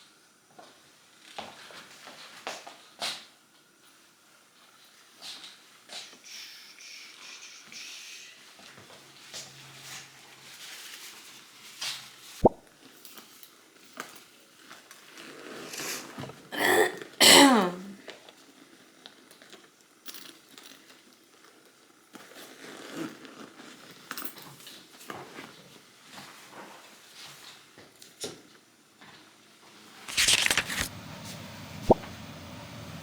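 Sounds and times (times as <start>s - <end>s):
throaty coughing bursts: 16.6s - 17.9s
soft crinkling and rustling: 30.1s - 30.9s.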